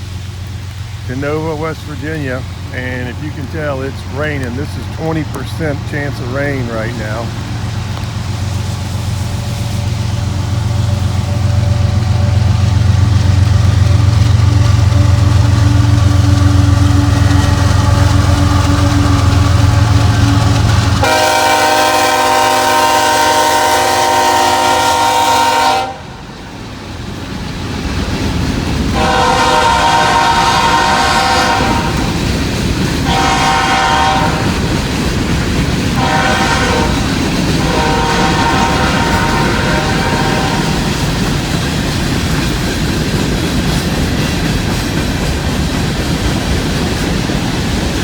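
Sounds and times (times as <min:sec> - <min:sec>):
passing train rumble: 0:00.0 - 0:48.0
locomotive air horn: 0:13.8 - 0:26.3, 0:28.9 - 0:32.2, 0:33.0 - 0:34.8, 0:36.0 - 0:41.0.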